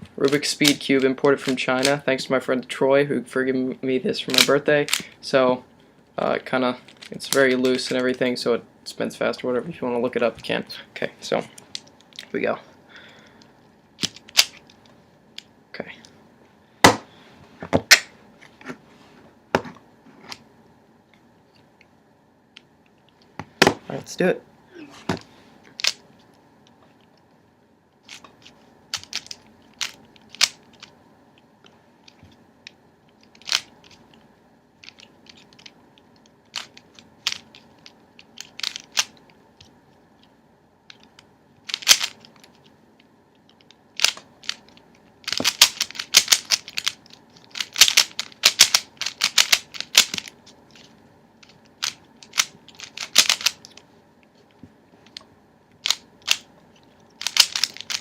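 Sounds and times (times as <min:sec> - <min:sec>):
speed cube clicking and rattling: 0:14.0 - 0:14.8, 0:25.8 - 0:26.0, 0:28.0 - 0:30.9, 0:32.0 - 0:34.1, 0:34.8 - 0:35.8, 0:36.4 - 0:39.2, 0:40.9 - 0:42.6, 0:43.5 - 0:53.8, 0:55.8 - 0:58.0.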